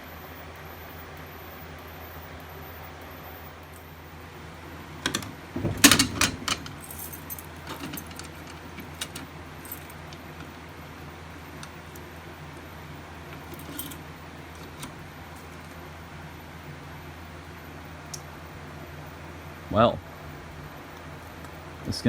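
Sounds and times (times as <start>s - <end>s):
steady low hum: 0.0s - 22.0s
keys jangling: 5.0s - 10.0s, 13.4s - 14.0s.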